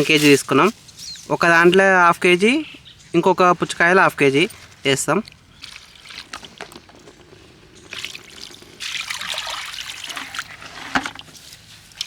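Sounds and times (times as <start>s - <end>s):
water trickling and splashing: 3.8s - 12.0s.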